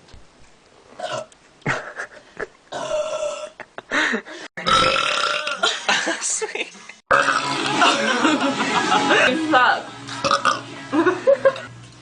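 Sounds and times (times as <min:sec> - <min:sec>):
person burping: 0:01.0 - 0:01.3, 0:02.7 - 0:03.7, 0:04.6 - 0:05.7, 0:07.1 - 0:07.6, 0:10.2 - 0:10.6.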